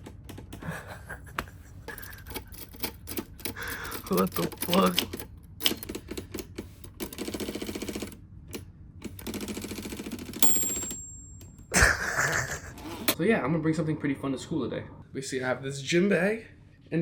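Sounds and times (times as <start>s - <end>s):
typewriter keys clicking: 2.3s - 7.8s
typewriter margin bell ding: 10.4s - 11.5s.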